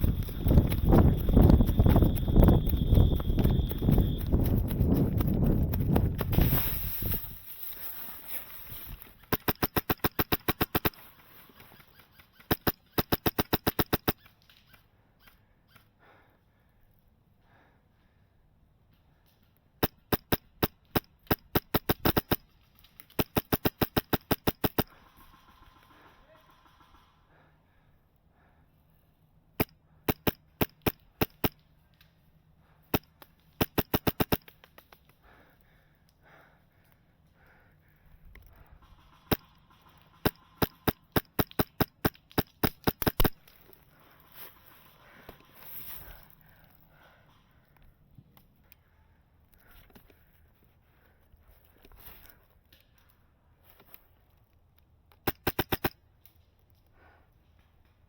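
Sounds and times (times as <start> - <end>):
airsoft gun firing: 9.2 - 11.2, 12.3 - 14.2, 19.8 - 22.4, 23.1 - 26.9, 29.6 - 31.6, 32.9 - 34.6, 38.8 - 43.4, 55.2 - 56.0
airsoft gun shots: 33.6 - 34.6, 55.2 - 56.0.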